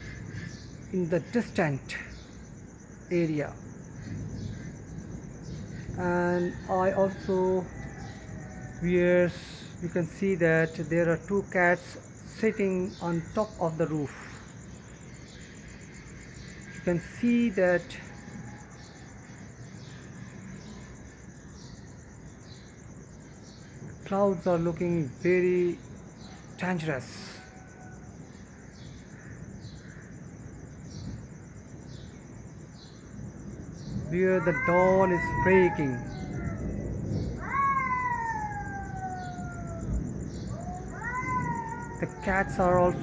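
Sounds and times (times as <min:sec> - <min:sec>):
crickets chirping: 0:00.0 - 0:43.0
faint bird chirps: 0:00.0 - 0:43.0
cat wailing: 0:34.0 - 0:43.0.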